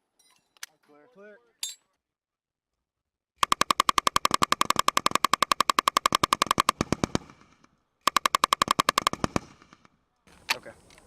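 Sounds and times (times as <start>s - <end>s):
machine gun automatic burst: 3.4s - 9.9s.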